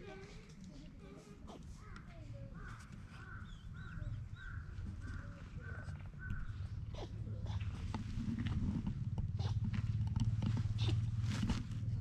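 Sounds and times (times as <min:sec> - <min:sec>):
bird calling: 0:01.5 - 0:07.8, 0:10.7 - 0:11.1.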